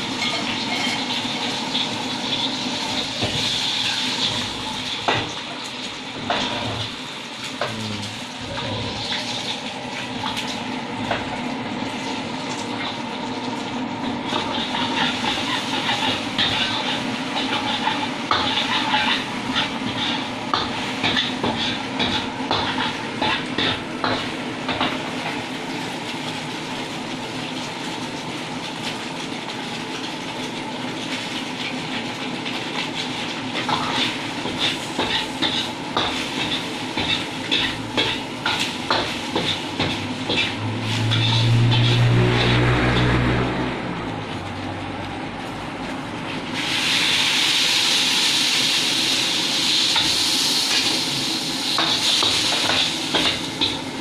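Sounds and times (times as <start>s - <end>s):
noodles sizzling: 0.0s - 54.0s
spatula scraping metal pan: 14.3s - 23.7s, 39.0s - 43.1s
loud low hum: 40.0s - 46.3s.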